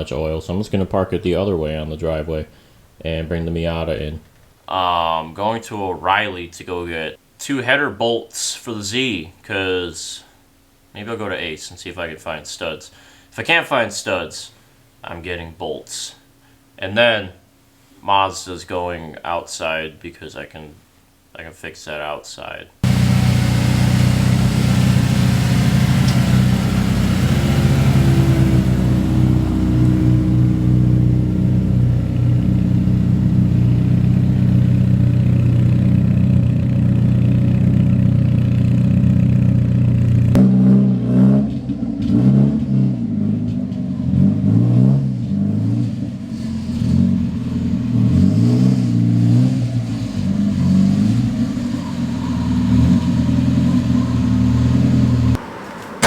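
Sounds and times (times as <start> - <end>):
uneven engine note: 22.8 - 42.0, 49.3 - 56.0
car engine accelerating: 22.8 - 56.0.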